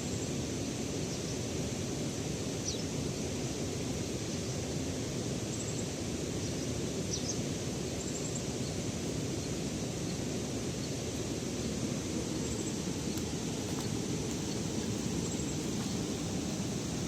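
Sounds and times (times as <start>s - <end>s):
steady rushing outdoor noise: 0.0s - 17.0s.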